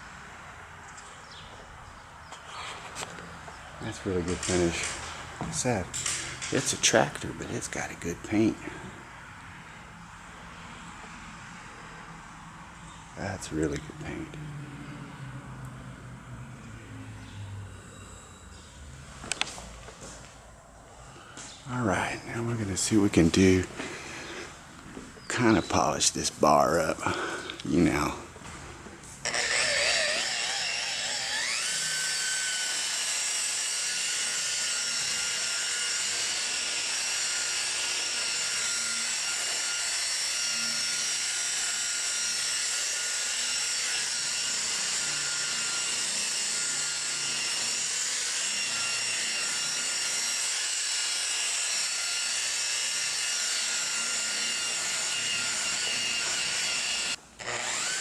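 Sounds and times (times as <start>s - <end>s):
electric polisher whine: 29.2s - 58.0s.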